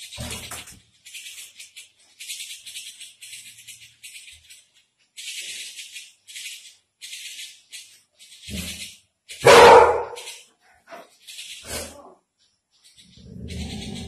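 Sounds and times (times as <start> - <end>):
raspy rattling bursts: 0.0 - 14.0
dog barking: 9.4 - 10.3.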